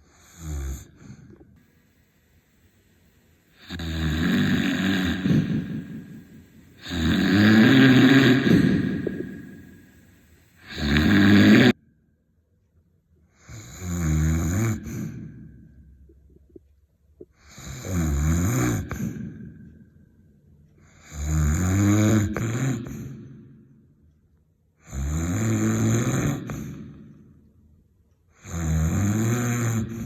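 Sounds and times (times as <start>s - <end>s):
heavy snoring: 0.0s - 1.4s, 3.5s - 11.8s, 13.3s - 15.4s, 17.4s - 19.5s, 20.8s - 23.1s, 24.8s - 27.0s, 28.4s - 30.0s.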